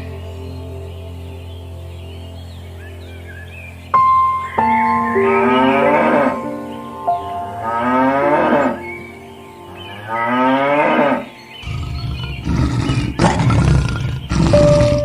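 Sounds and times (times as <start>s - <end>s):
soft background music: 0.0s - 15.0s
cattle mooing: 7.6s - 8.8s, 9.9s - 15.0s.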